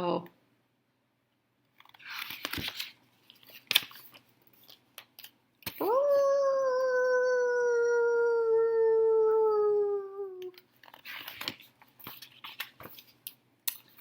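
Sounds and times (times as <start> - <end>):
soft clicks and rustles: 1.6 - 5.8, 10.4 - 14.0
dog-like howl: 5.8 - 10.5.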